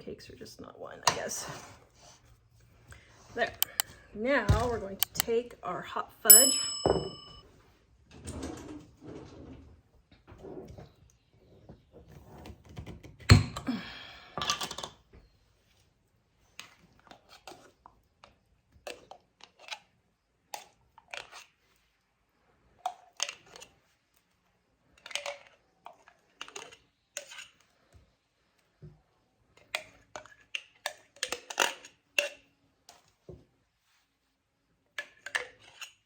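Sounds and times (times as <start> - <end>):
kitchen utensil clicks and scrapes: 3.5 - 3.9, 5.0 - 5.3, 35.0 - 36.0.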